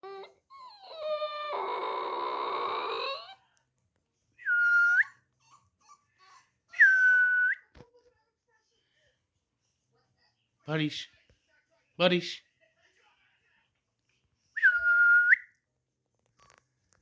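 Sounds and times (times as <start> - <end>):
dog howling: 0.0 - 3.4
dog whining high-pitched: 0.0 - 3.4.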